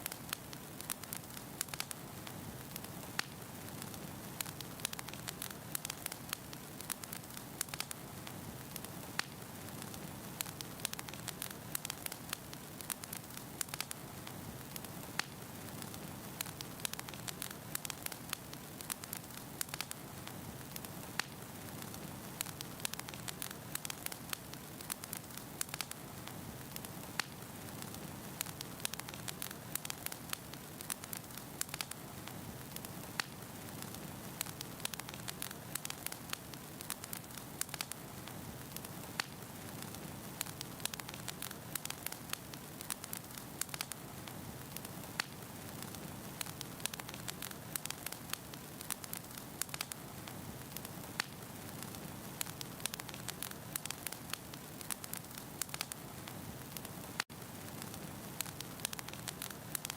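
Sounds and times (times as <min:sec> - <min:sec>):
fire crackling in fireplace: 0:00.0 - 0:59.9.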